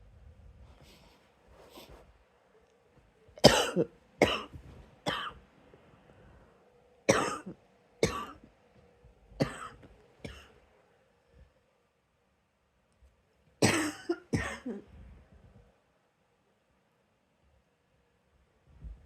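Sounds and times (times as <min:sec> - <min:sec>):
person coughing: 0:03.4 - 0:05.4, 0:07.1 - 0:08.4, 0:13.6 - 0:14.9.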